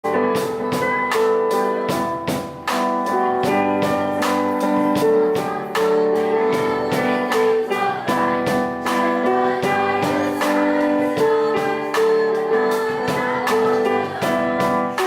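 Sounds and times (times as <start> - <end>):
drums keeping a steady beat: 0.0 - 15.0
piano chords: 0.0 - 15.0.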